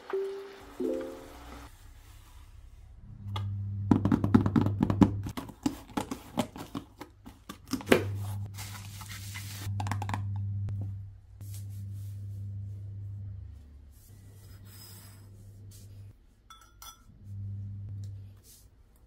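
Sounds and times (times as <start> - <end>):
steady low hum: 9.7 - 16.2, 17.1 - 18.4.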